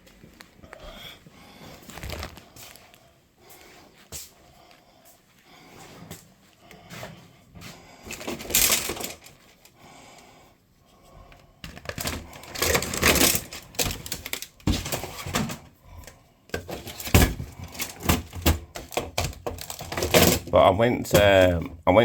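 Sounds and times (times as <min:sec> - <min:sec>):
rustling of supplies: 0:00.0 - 0:21.8.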